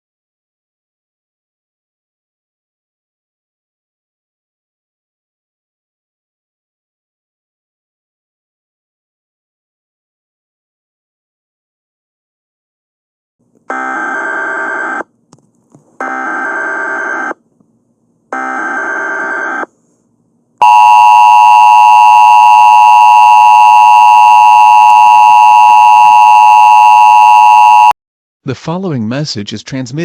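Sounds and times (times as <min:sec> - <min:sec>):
two-tone attention signal: 0:20.6 - 0:27.9
digital data tone bursts: 0:20.6 - 0:28.0.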